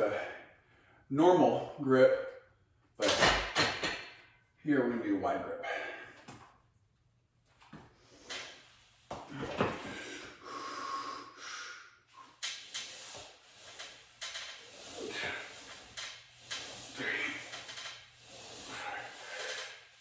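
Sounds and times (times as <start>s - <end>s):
man breathing hard: 5.6s - 6.4s, 9.3s - 20.0s.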